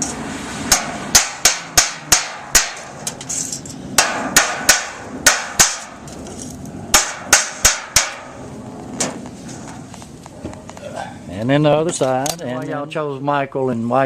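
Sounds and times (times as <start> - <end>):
hammer striking metal: 0.0 - 6.0, 6.9 - 8.4.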